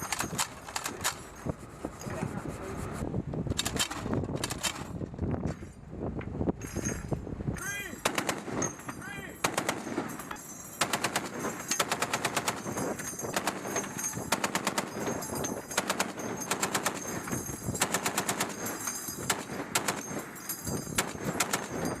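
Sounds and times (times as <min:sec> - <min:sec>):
machine gun bursts: 0:08.0 - 0:08.8, 0:09.4 - 0:20.4, 0:21.0 - 0:22.0.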